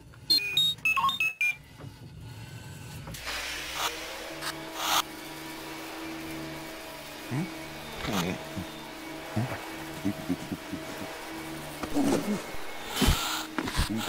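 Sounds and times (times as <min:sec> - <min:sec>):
electronic beeps: 0:00.3 - 0:01.6
vacuum cleaner running: 0:03.1 - 0:14.0.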